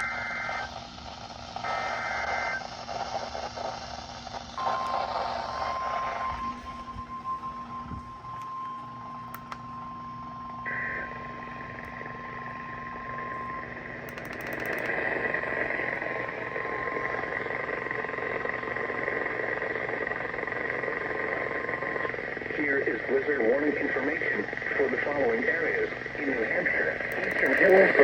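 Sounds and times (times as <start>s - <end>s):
radio static hiss: 0.0s - 28.0s
steady alarm beep: 4.6s - 14.9s.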